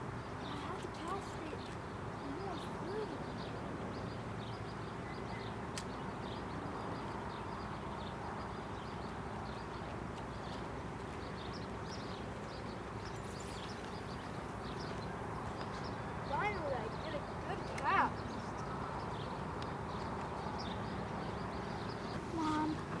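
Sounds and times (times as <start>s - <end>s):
outdoor background noise: 0.0s - 23.0s
short high chirps: 13.2s - 15.6s.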